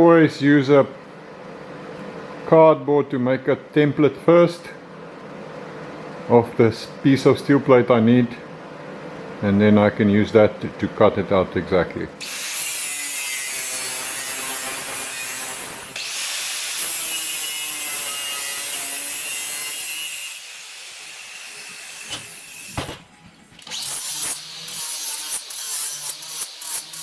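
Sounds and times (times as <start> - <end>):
power tool cutting steel: 12.2 - 23.0, 23.6 - 27.0.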